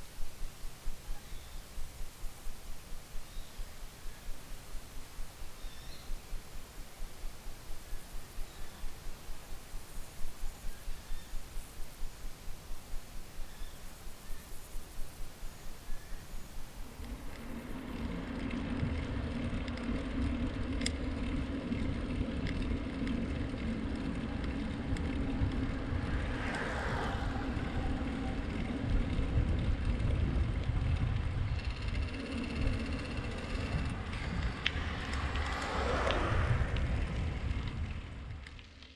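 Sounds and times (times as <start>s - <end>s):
passing swells: 0.0s - 17.8s
bicycle tyres and wind rumble: 0.0s - 38.9s.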